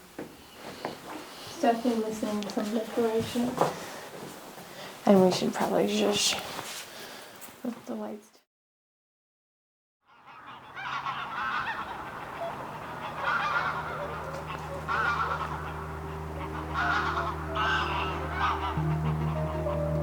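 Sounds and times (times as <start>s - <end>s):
ducks quacking: 10.1s - 20.0s.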